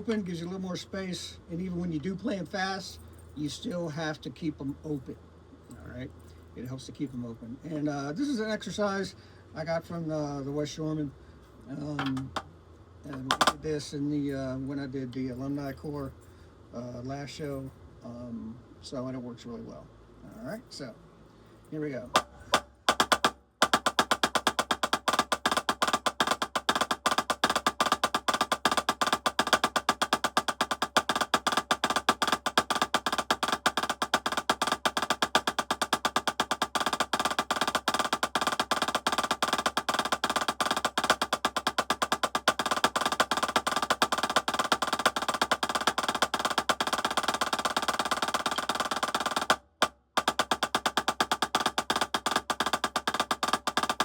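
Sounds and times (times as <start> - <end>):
drumsticks playing drags and rolls: 11.8 - 12.5, 13.1 - 13.7, 22.0 - 54.0.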